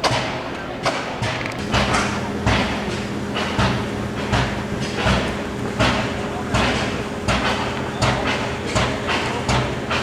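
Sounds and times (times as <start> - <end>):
gas engine beats and knocks: 0.0 - 10.0.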